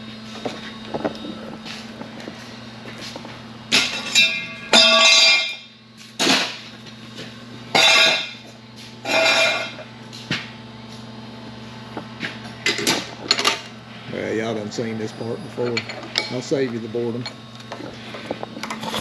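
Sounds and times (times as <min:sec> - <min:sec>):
milling machine motor hum: 0:00.0 - 0:04.3, 0:10.6 - 0:19.0
loud ringing cutting bursts: 0:03.5 - 0:05.9, 0:07.7 - 0:10.0.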